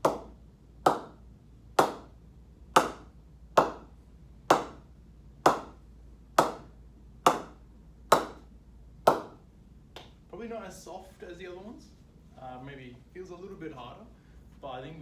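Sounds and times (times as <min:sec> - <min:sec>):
ball striking cricket bat: 0:00.0 - 0:01.2, 0:01.8 - 0:02.1, 0:02.8 - 0:03.9, 0:04.5 - 0:04.9, 0:05.5 - 0:05.8, 0:06.4 - 0:06.7, 0:07.3 - 0:08.5, 0:09.1 - 0:09.4.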